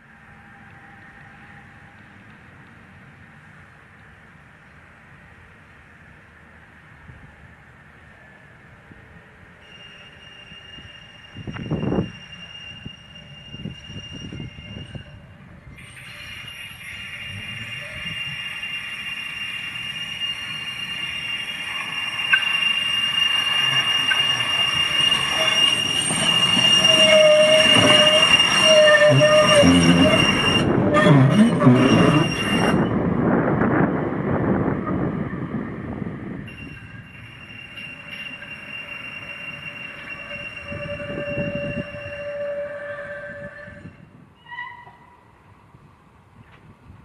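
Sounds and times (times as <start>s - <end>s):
tram rolling rumble: 0.0s - 47.0s
tram wheels squealing: 9.5s - 33.8s, 34.5s - 45.4s.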